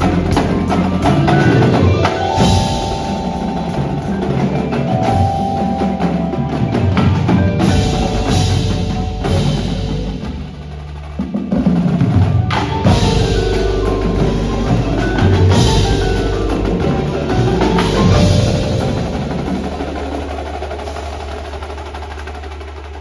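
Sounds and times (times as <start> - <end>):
percussive music: 0.0 - 23.0.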